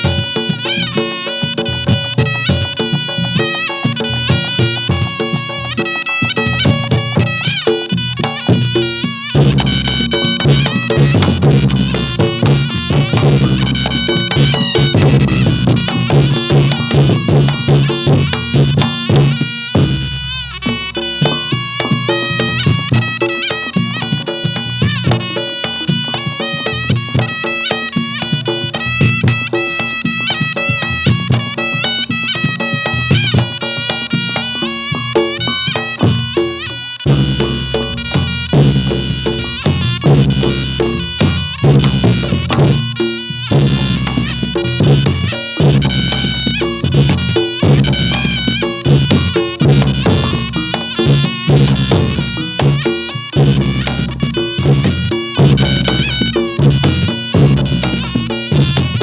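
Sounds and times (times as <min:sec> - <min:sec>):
hand drums and percussion: 0:00.0 - 0:59.0
shawm playing a melody: 0:00.0 - 0:59.0.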